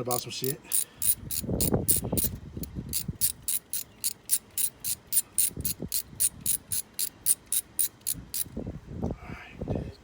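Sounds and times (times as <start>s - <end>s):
ratchet wrench clicking: 0.7s - 8.5s.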